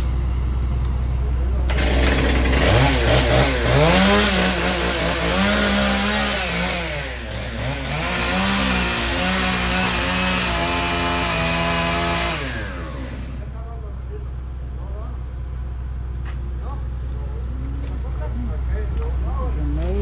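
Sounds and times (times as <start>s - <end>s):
chainsaw engine revving: 1.7s - 13.6s.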